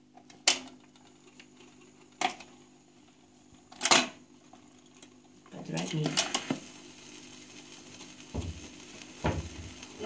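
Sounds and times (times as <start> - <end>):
record player humming: 0.0 - 10.0.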